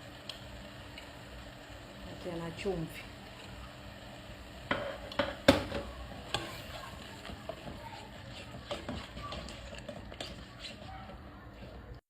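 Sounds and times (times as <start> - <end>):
faint sizzle: 0.0 - 12.0
spoon knocking against pot: 4.7 - 5.9
spoon stirring in a pot: 4.7 - 12.0.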